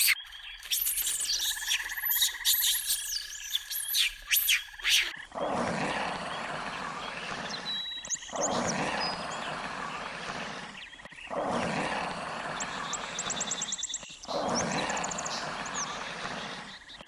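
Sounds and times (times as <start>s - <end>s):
sharp croaking animal calls: 0.0s - 5.4s.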